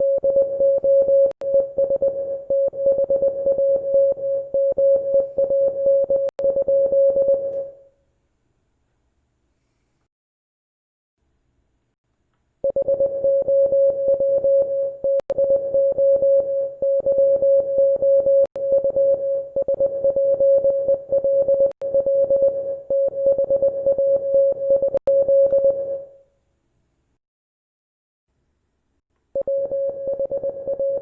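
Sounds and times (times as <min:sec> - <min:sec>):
morse code beeps: 0:12.7 - 0:26.0, 0:29.4 - 0:31.0.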